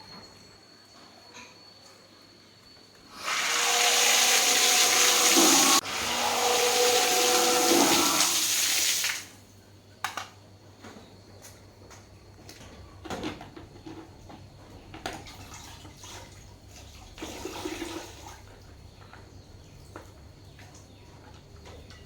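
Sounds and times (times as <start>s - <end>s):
pump rushing water: 3.2s - 9.3s.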